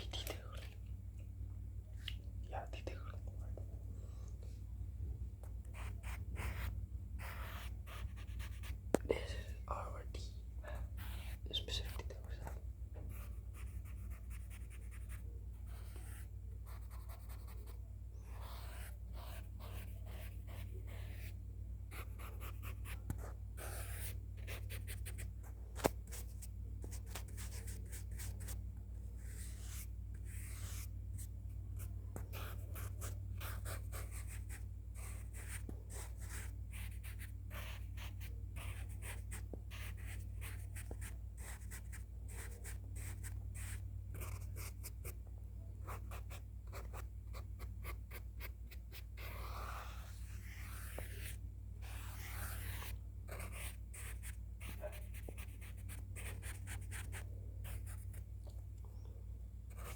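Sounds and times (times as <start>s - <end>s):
scratchy sketching strokes: 13.1s - 21.3s, 29.2s - 30.9s, 45.8s - 58.2s.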